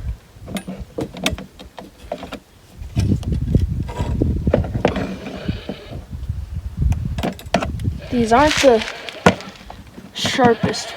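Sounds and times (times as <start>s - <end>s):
rustling and handling noise: 7.2s - 10.9s.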